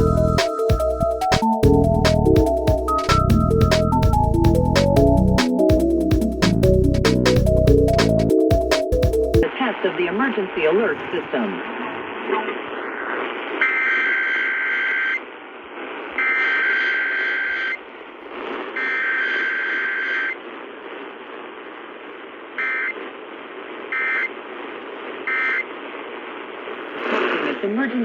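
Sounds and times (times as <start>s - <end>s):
radio hiss: 9.4s - 28.0s.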